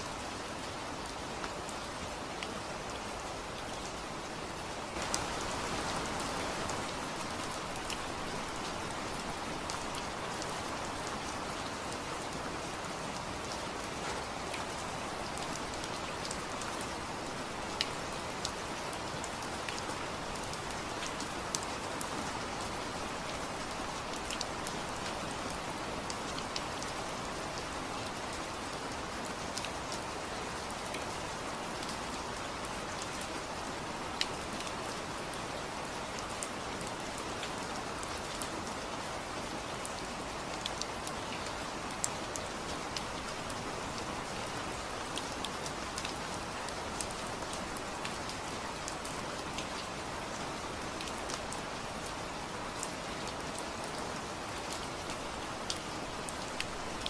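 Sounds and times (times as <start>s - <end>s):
steady rain falling: 0.0s - 57.0s
raindrops ticking on a surface: 4.9s - 57.0s.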